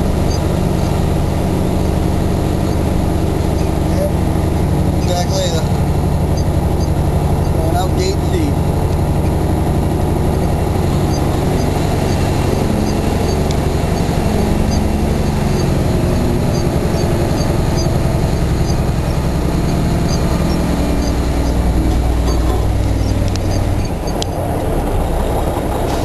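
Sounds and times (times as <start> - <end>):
truck diesel engine running: 0.0 - 26.0.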